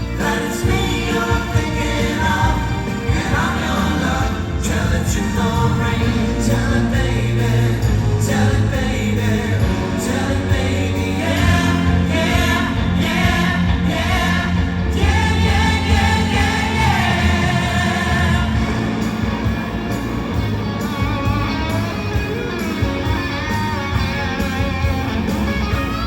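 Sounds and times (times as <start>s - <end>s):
person singing: 0.0s - 19.2s
live pop band playing: 0.0s - 26.0s.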